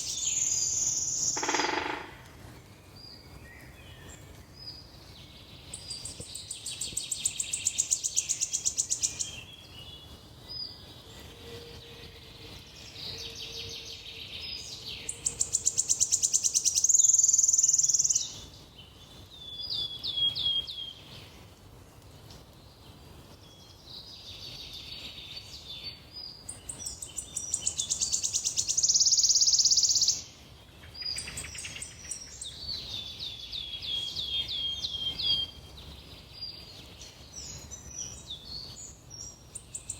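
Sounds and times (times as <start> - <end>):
songbird trilling: 0.0 - 2.4, 26.5 - 30.3
outdoor background noise: 0.0 - 39.9.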